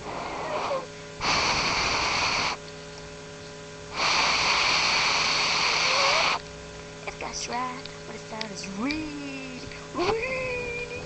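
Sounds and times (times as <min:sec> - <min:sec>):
loud hissing noise: 0:00.0 - 0:02.6, 0:03.9 - 0:06.4
faint steady hum: 0:00.0 - 0:11.0.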